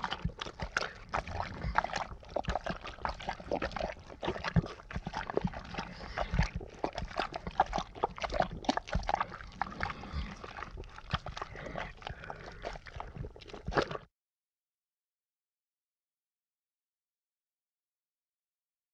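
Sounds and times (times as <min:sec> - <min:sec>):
gooey ooze bubbling: 0:00.0 - 0:14.1.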